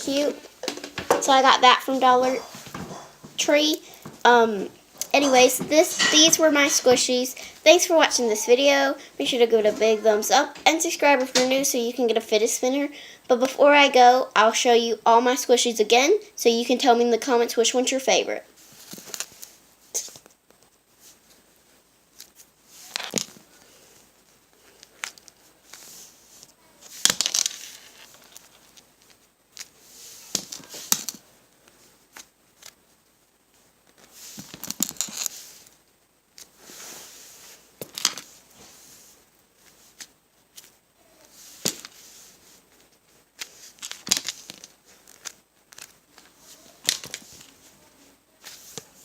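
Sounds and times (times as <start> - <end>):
squishy toys rustling and crinkling: 24.6 - 31.2.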